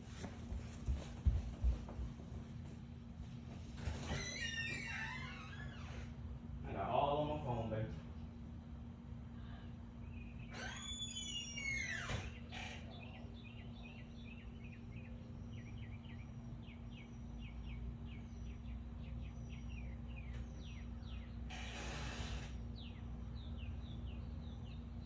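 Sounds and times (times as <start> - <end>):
steady low hum: 0.0 - 4.1, 5.8 - 10.6, 12.2 - 25.0
bird chirping: 10.0 - 21.5, 22.6 - 25.0.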